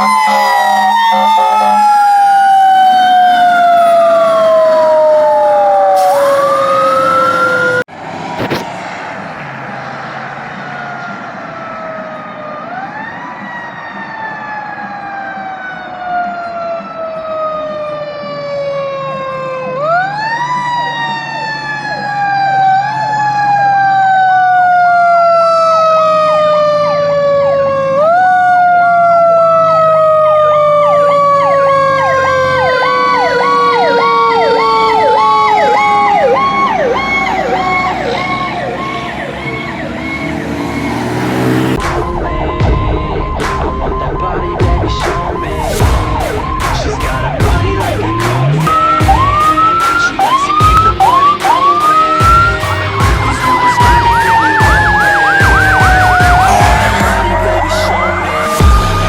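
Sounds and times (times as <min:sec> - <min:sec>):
electronic siren pulsing: 0:00.0 - 0:08.6, 0:09.8 - 0:59.0
low engine drone: 0:35.8 - 0:59.0.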